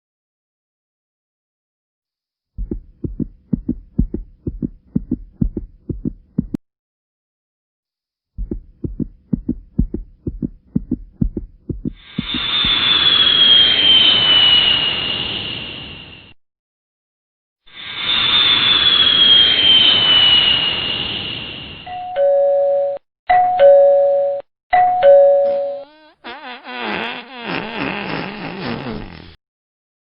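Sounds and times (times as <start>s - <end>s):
heartbeat thumps: 2.6s - 6.6s, 8.4s - 12.8s.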